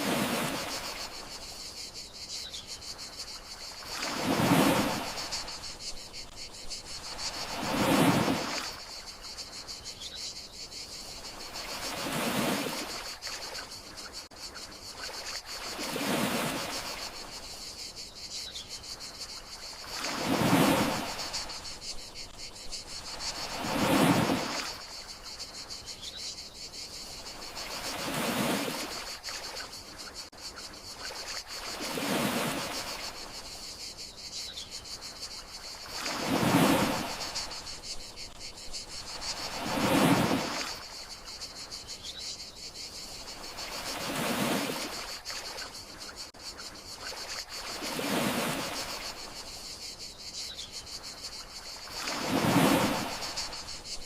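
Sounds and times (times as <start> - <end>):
sea waves washing ashore: 0.0 - 1.6, 3.2 - 9.6, 11.0 - 13.7, 15.0 - 17.5, 19.2 - 25.6, 27.2 - 30.3, 31.0 - 33.6, 35.4 - 41.5, 43.2 - 46.2, 47.0 - 49.6, 51.6 - 54.0
crickets chirping: 0.0 - 54.0.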